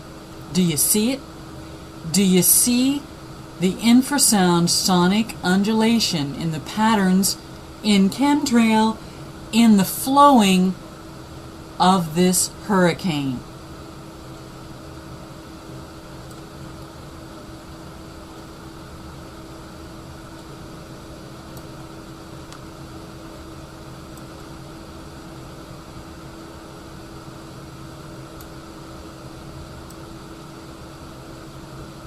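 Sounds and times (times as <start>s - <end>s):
constant mid-pitched tone: 0.0s - 13.6s
background hum and hiss: 0.0s - 32.0s.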